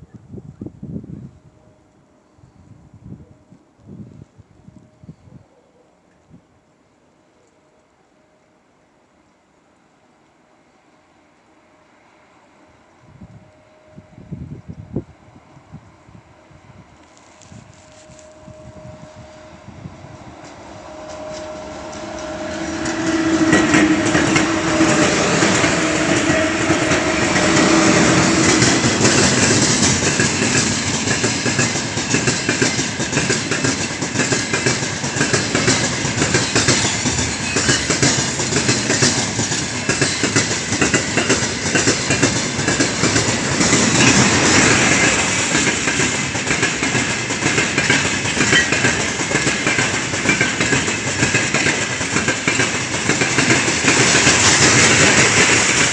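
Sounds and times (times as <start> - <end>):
locomotive two-note hum: 16.9 - 29.6
train wheels clacking: 20.3 - 55.9.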